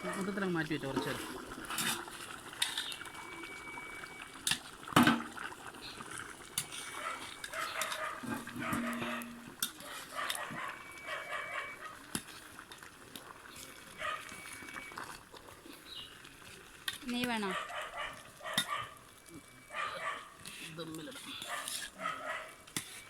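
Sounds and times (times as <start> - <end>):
dog barking: 0.0 - 0.3, 7.0 - 12.0, 14.0 - 14.3, 17.4 - 19.0, 19.7 - 20.4, 21.4 - 22.6.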